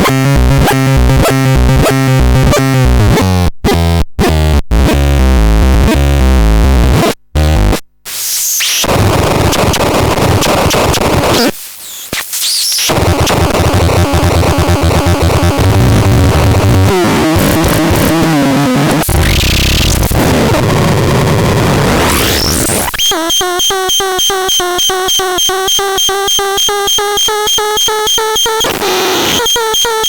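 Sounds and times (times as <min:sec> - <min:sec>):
harsh electronic noise: 0:08.2 - 0:30.0
pitched electronic tones: 0:22.0 - 0:30.0.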